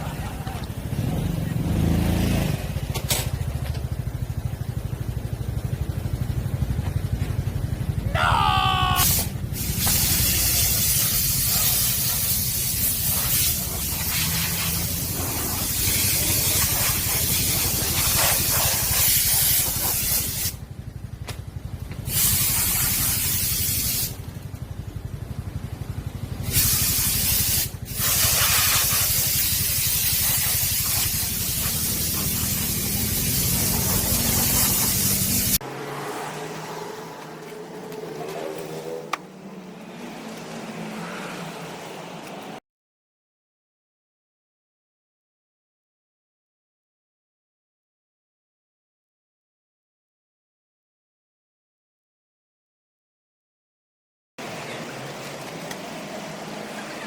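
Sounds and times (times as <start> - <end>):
motorcycle engine pulsing: 0.0 - 8.3, 9.2 - 35.6.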